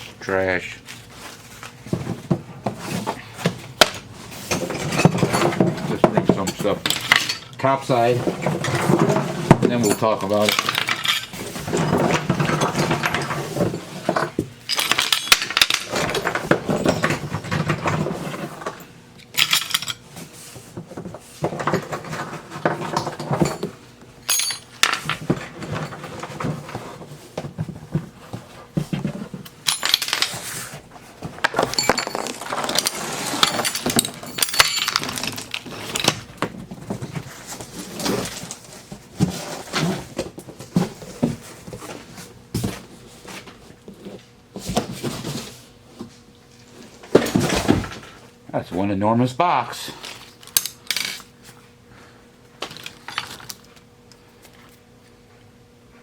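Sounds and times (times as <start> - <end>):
metal parts clinking: 6.4 - 7.6, 9.7 - 13.4, 14.7 - 17.8, 19.2 - 20.0, 23.0 - 25.2, 29.6 - 30.6, 31.5 - 36.3, 50.0 - 51.2.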